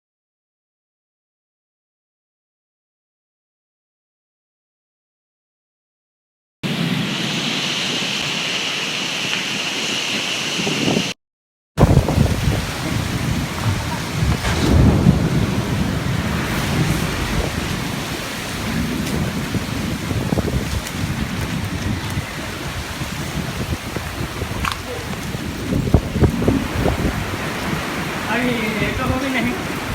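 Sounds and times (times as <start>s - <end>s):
heavy rain hissing: 6.6s - 11.2s, 11.9s - 29.9s
wind gusting over microphone: 6.6s - 11.2s, 11.8s - 29.9s.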